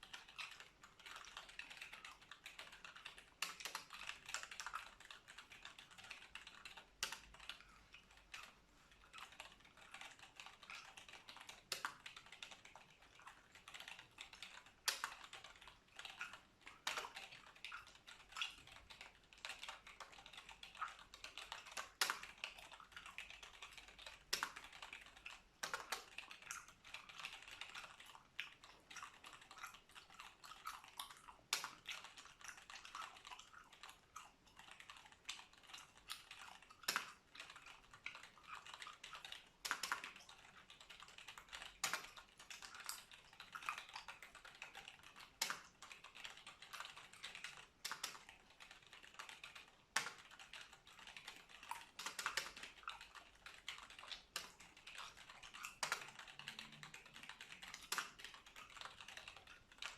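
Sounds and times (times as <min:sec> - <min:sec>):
keyboard typing: 0:00.0 - 0:59.9
gum chewing: 0:27.8 - 0:39.4.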